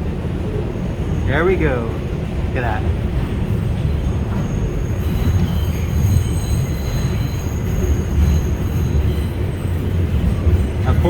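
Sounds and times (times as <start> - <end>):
train wheels rumbling on rail: 0.0 - 11.0
high wheel squeal: 3.8 - 11.0.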